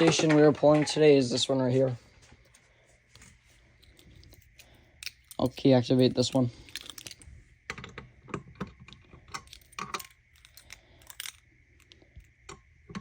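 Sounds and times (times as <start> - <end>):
keys jingling: 3.8 - 7.2, 9.4 - 11.4.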